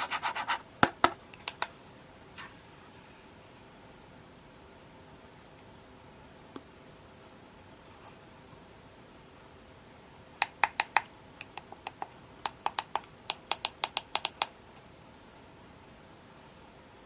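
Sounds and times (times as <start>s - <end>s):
sharp clicks: 10.4s - 14.5s.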